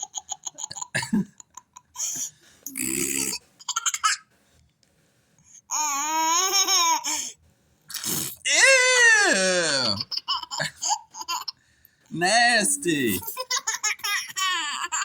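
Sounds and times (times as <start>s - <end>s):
girl making fake fart sounds: 7.9s - 8.5s.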